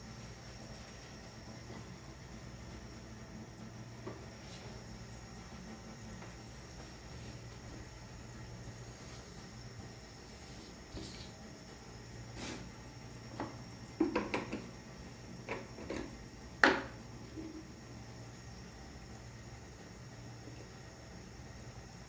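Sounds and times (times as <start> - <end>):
low steady hum: 0.0 - 22.0
kitchen things knocking and clattering: 13.4 - 14.7, 15.5 - 17.0.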